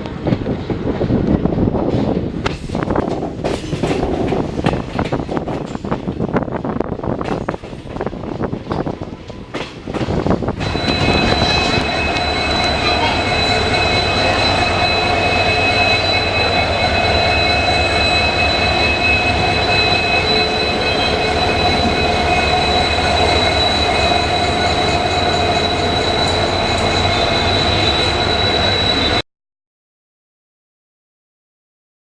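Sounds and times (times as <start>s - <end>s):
train wheels rumbling on track: 0.0s - 29.2s
high-pitched whining tones: 10.6s - 29.2s.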